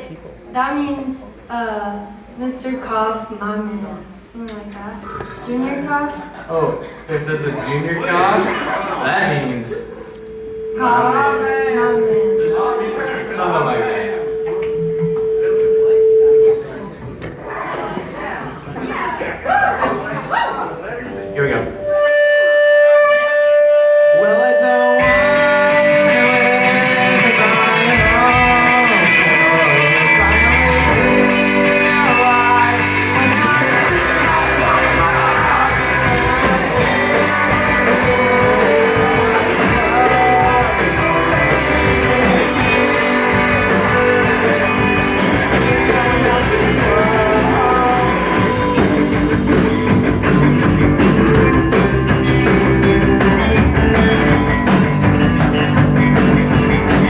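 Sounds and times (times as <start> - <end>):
guitar: 7.5 - 17.6, 21.0 - 57.0
live rock band: 21.2 - 57.0
person singing: 24.1 - 49.9.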